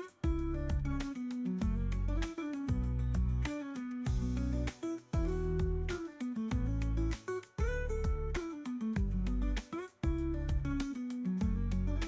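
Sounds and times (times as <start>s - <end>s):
plucked guitar: 0.0s - 12.0s
heavy bass line: 1.6s - 3.5s, 4.1s - 5.9s.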